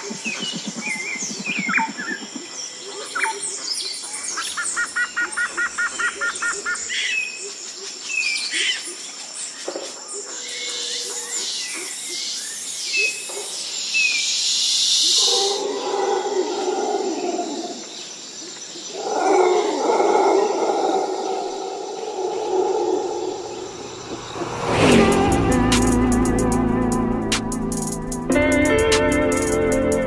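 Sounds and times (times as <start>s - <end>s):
wild birds chirping: 0.0s - 25.0s
steady high tone: 23.4s - 30.0s.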